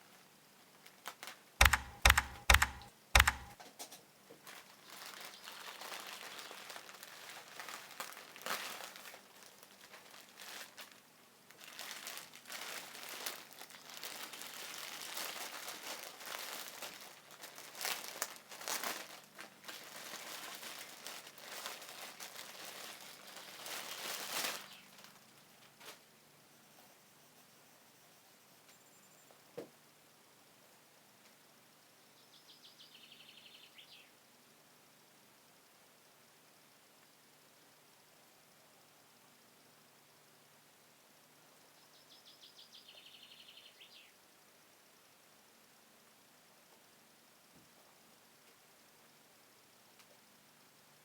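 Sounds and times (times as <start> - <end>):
packaging crinkling: 4.4 - 25.2.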